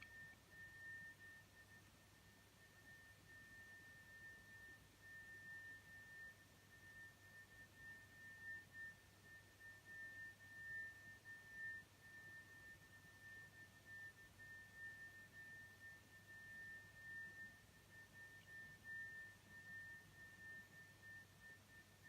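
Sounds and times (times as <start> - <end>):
steady high-pitched whistle: 0.0 - 22.0.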